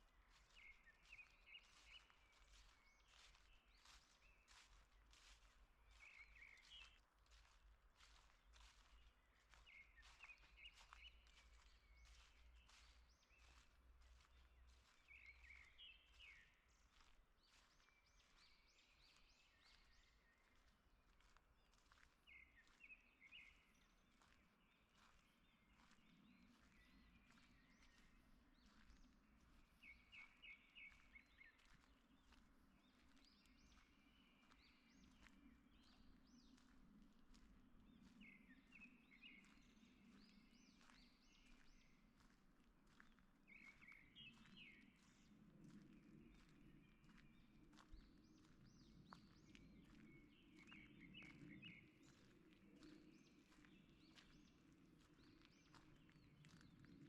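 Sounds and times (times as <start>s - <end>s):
soft footsteps: 0.3s - 57.0s.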